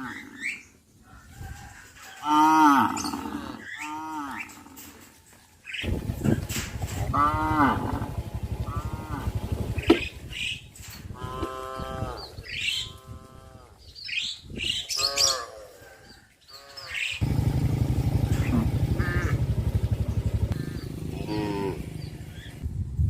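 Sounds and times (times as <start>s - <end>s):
birds chirping: 0.0s - 22.7s
cattle mooing: 2.3s - 4.8s, 7.0s - 9.7s, 11.2s - 12.3s, 12.9s - 13.8s, 21.0s - 22.3s
low rapid throbbing: 5.9s - 10.2s, 17.2s - 22.6s.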